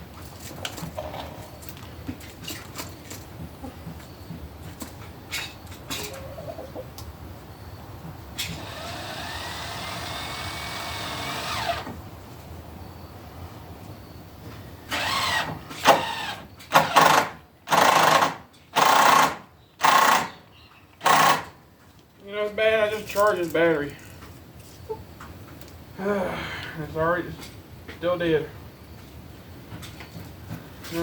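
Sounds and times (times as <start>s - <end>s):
cordless drill whirring: 8.6s - 11.9s, 14.9s - 20.3s, 21.0s - 21.5s.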